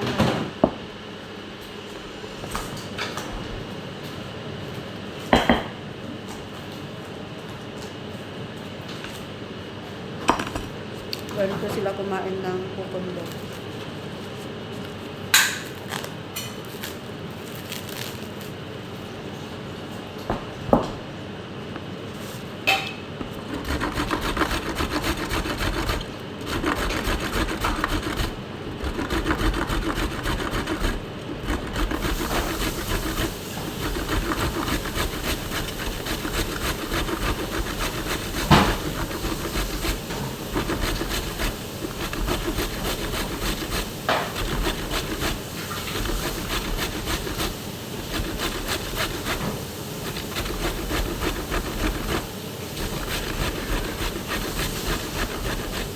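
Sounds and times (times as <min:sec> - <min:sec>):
scraping strokes of food preparation: 0:22.1 - 0:55.9.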